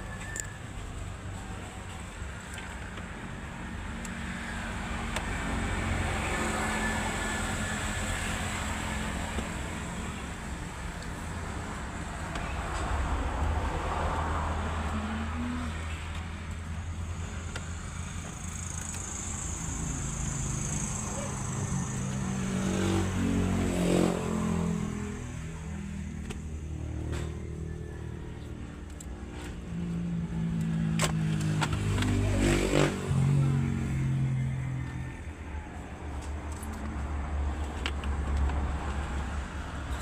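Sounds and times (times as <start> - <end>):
motor vehicle engines running: 0.0 - 40.0.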